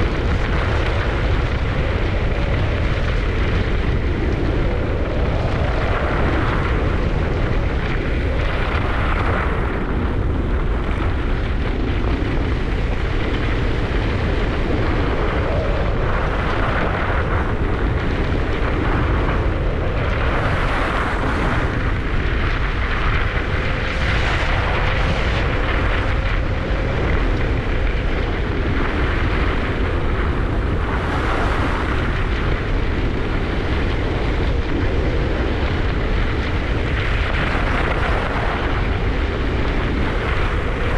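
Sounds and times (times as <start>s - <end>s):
wind buffeting microphone: 0.0s - 40.9s.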